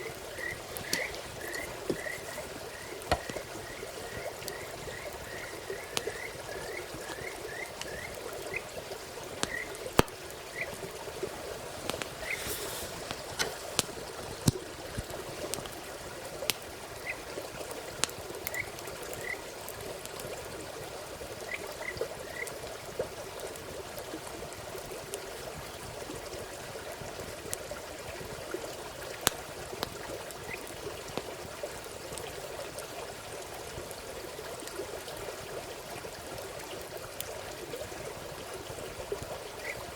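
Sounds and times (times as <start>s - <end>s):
frogs chorus: 0.0s - 11.0s, 16.8s - 17.4s, 18.4s - 19.5s, 21.4s - 22.6s, 39.4s - 39.9s
campfire crackling: 0.0s - 39.9s.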